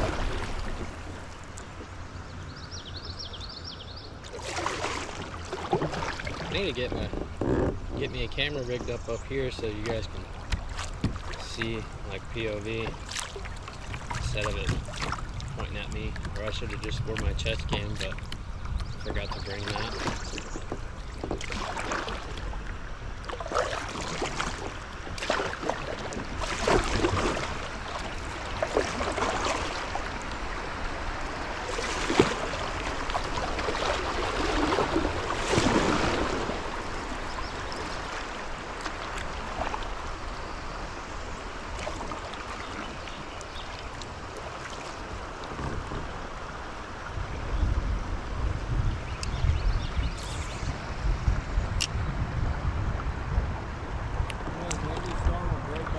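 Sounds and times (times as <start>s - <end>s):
kayak paddle splashing: 0.0s - 2.6s, 4.1s - 51.0s
wind buffeting microphone: 5.9s - 38.8s, 45.4s - 55.9s.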